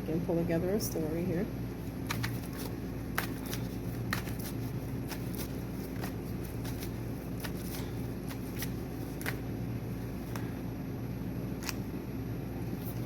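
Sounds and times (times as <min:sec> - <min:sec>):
steady low hum: 0:00.0 - 0:13.0
cards being shuffled: 0:01.8 - 0:10.6, 0:11.6 - 0:11.9, 0:12.7 - 0:13.0
card flicks and snaps: 0:11.6 - 0:11.8.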